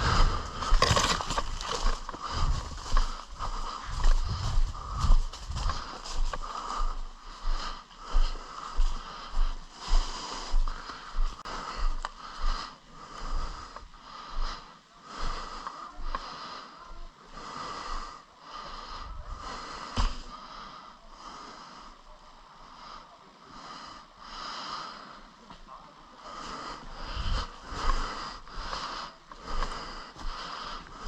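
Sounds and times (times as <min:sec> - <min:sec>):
regular thumps: 0:00.0 - 0:07.2
person breathing heavily: 0:00.0 - 0:31.0.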